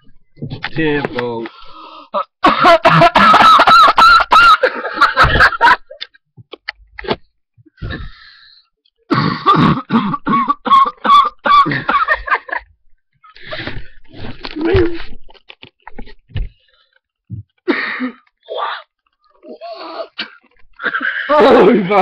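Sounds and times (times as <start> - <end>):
person coughing hard: 2.2 - 4.6, 9.1 - 12.2.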